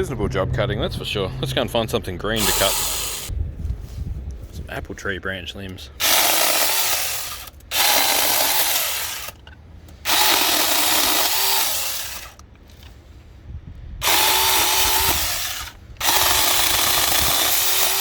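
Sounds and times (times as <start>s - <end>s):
mini chainsaw cutting branches: 2.4s - 3.3s, 6.0s - 9.4s, 10.0s - 12.4s, 14.0s - 18.0s.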